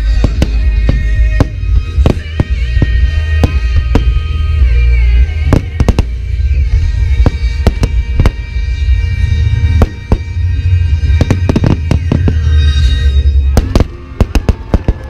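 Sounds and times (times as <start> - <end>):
deep rumble: 0.0 - 15.0
music playing: 0.0 - 15.0
firework shells bursting: 11.0 - 12.8, 13.4 - 15.0.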